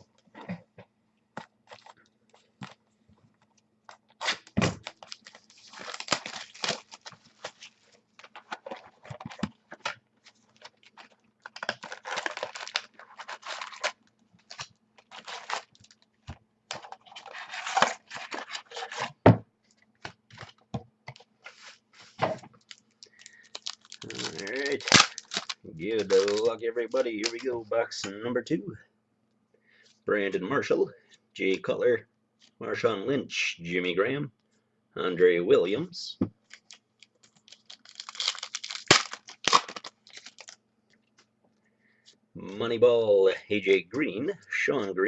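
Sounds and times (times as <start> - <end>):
plastic wrapping tearing and crumpling: 4.1 - 16.1, 22.6 - 27.5, 36.5 - 40.6.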